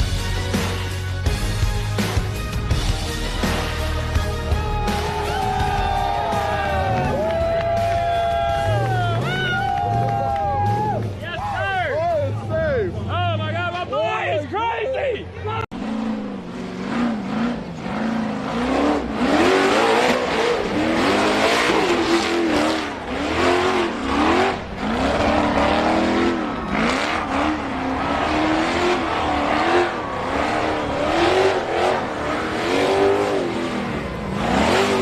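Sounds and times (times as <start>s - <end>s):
off-road engine revving hard: 3.1s - 10.8s, 15.7s - 35.0s.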